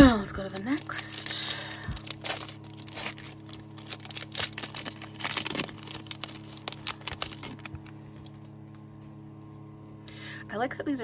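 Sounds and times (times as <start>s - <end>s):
steady low hum: 0.0s - 11.0s
foil wrapper crinkling and tearing: 0.1s - 8.6s.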